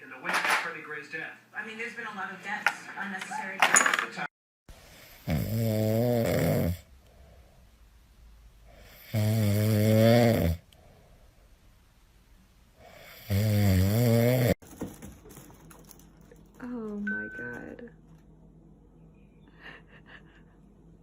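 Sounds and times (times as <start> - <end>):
person snoring: 5.0 - 6.9, 8.7 - 10.6, 12.8 - 14.6.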